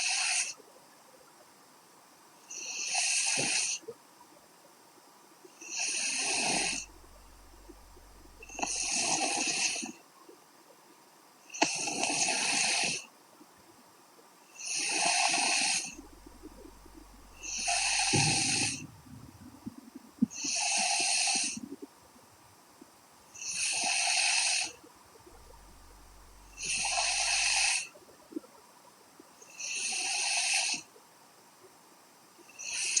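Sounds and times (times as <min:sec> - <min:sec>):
woman snoring: 0:05.9 - 0:09.6, 0:15.6 - 0:18.8, 0:25.4 - 0:27.8.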